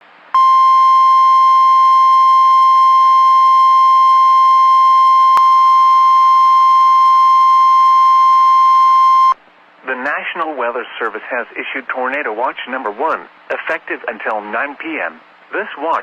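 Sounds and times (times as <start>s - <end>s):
steady warning alarm beep: 0.4s - 9.4s.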